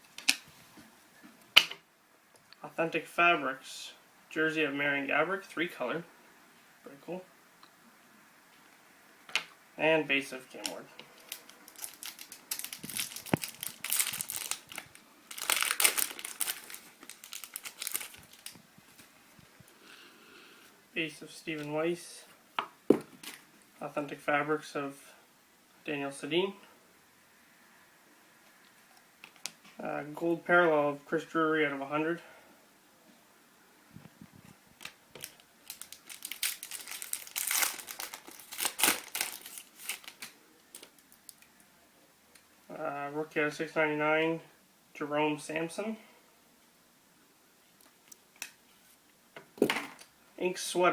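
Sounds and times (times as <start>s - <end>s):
foil wrapper crinkling: 10.5s - 19.1s, 34.8s - 41.5s.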